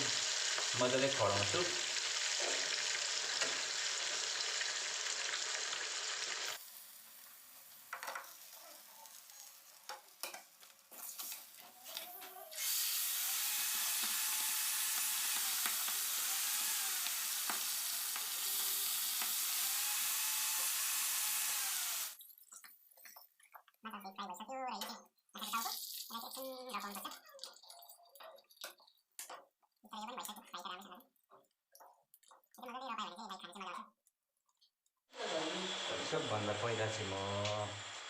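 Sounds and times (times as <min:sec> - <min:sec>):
fish frying in hot oil: 0:00.0 - 0:11.7, 0:12.6 - 0:22.3.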